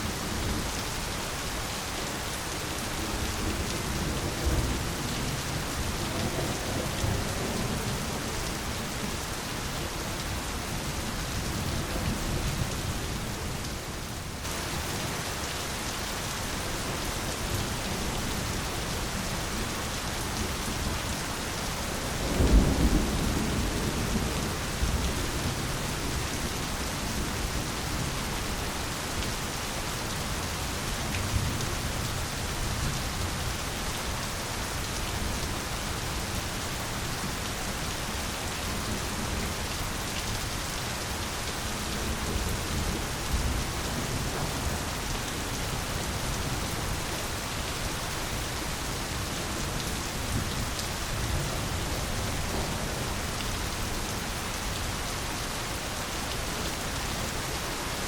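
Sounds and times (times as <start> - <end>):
rain pouring onto foliage: 0.0 - 58.0
faint low thunder rumbles: 21.8 - 28.6.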